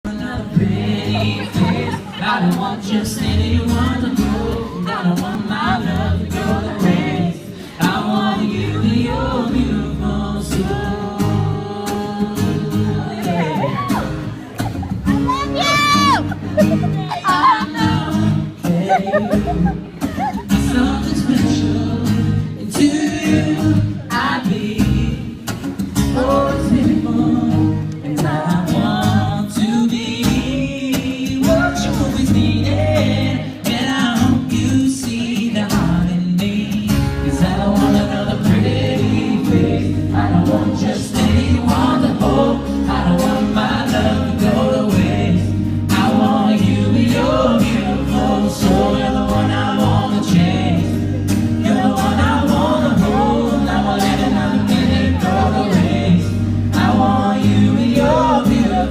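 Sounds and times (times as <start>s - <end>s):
pop band with pulsing bass: 0.0s - 58.9s
person singing: 15.1s - 25.4s, 26.0s - 58.9s.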